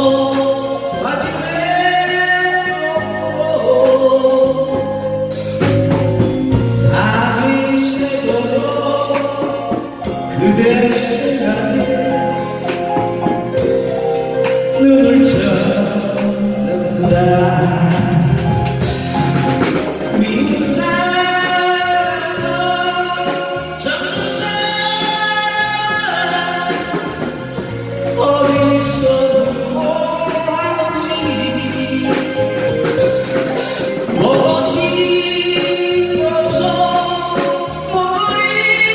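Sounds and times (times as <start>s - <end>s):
drum kit: 0.0s - 38.9s
keyboard accompaniment: 0.0s - 38.9s
sustained lead melody: 0.0s - 38.9s.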